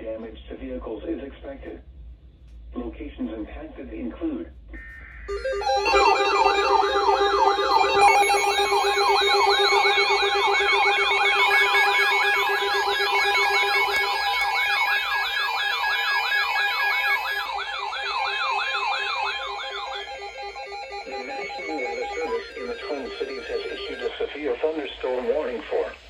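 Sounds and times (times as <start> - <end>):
electronic alert siren tones: 5.3 - 24.9.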